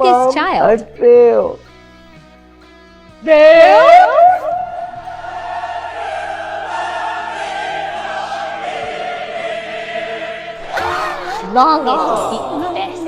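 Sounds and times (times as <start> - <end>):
choir singing held note: 3.7 - 13.0.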